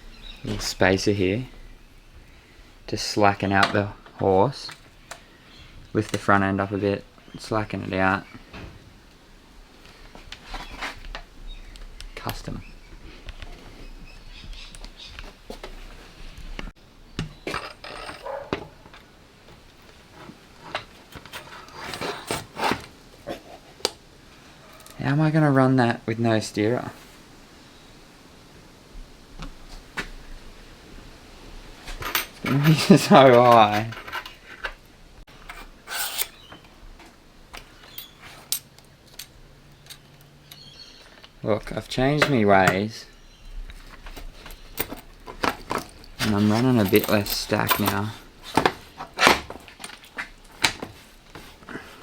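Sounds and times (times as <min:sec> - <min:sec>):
parts clacking: 0:16.6 - 0:24.0, 0:32.0 - 0:42.9, 0:43.7 - 0:52.0
metal parts scraping: 0:17.5 - 0:22.9, 0:35.3 - 0:36.5, 0:44.0 - 0:50.6
small hard parts clicking and knocking: 0:43.7 - 0:51.4.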